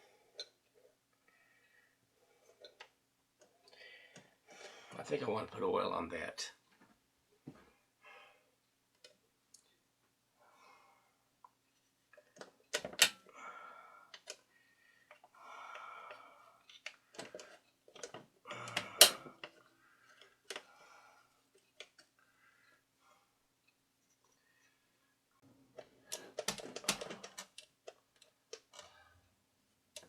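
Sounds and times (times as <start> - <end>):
small parts and tools clicking: 16.1 - 20.6.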